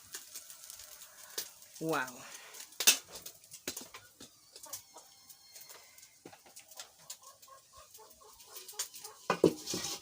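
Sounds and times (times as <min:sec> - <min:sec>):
chickens clucking: 0:03.0 - 0:10.0.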